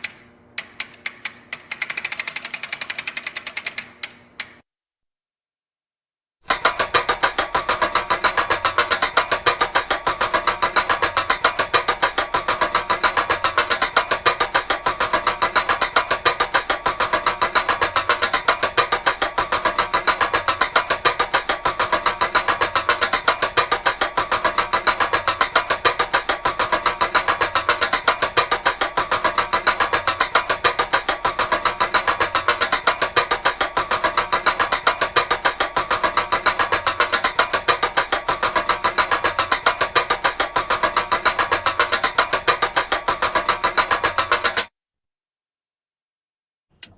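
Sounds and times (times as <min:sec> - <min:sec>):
metal chain ratchet clicking: 0:00.0 - 0:04.6.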